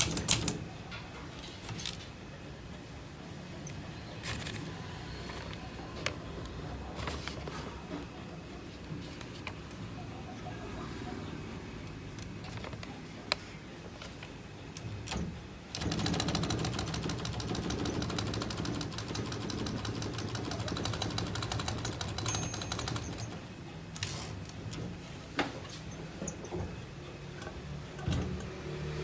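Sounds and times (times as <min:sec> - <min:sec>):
manual typewriter typing: 0:00.0 - 0:00.7, 0:14.8 - 0:25.0.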